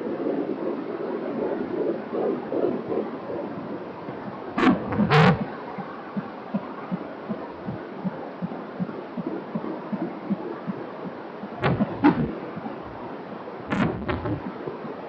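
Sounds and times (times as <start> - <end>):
steady hiss: 3.4 - 15.0
fetal heartbeat pulsing: 4.1 - 15.0
scraping bursts: 11.6 - 13.0, 13.7 - 14.4.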